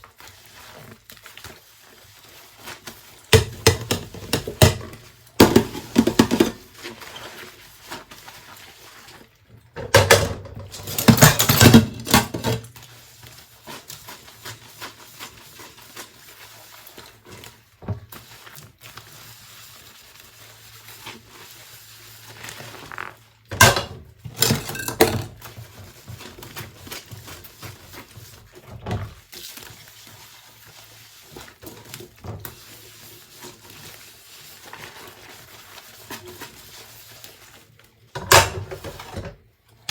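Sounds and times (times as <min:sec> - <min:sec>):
dishes and cutlery clinking: 0:03.4 - 0:06.8, 0:09.8 - 0:12.7, 0:23.6 - 0:25.3.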